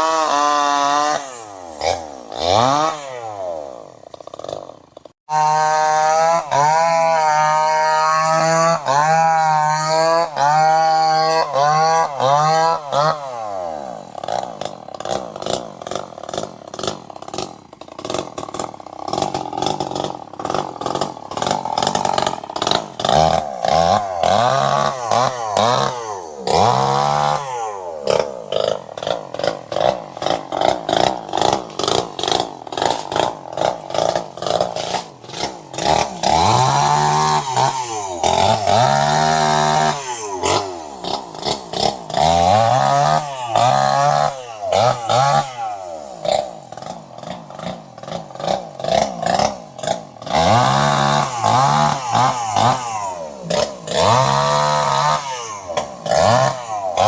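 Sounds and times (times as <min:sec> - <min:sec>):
chainsaw engine revving: 0:00.0 - 0:57.0.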